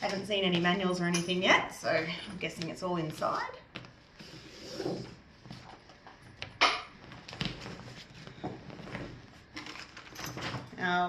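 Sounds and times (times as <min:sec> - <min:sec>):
canvas rustling and knocking: 0:05.4 - 0:10.8.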